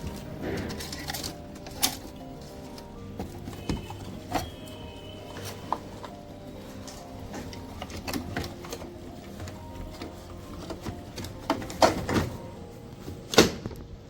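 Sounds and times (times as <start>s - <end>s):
hard plastic parts clicking: 0.0s - 12.6s.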